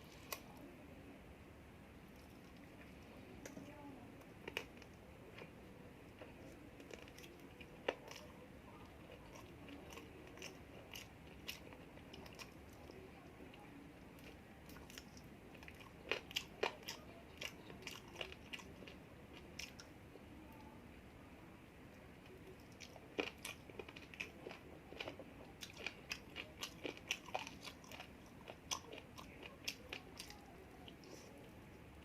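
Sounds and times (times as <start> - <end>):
person chewing and crunching food: 6.2 - 13.1, 14.2 - 19.9, 22.6 - 31.3.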